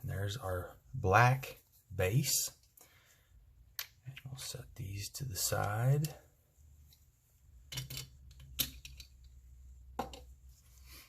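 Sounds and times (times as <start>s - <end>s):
small metal parts clicking: 7.7s - 9.3s.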